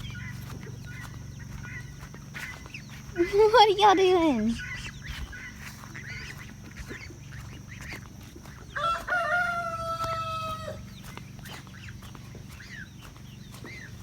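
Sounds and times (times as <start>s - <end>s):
chickens clucking: 0.0s - 14.0s
rooster crowing: 8.5s - 11.0s.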